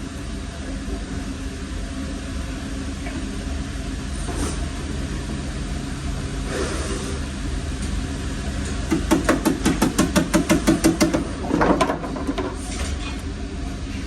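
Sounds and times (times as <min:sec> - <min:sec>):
low shop hum: 0:00.0 - 0:14.0
tool tapping on sheet metal: 0:08.9 - 0:11.9.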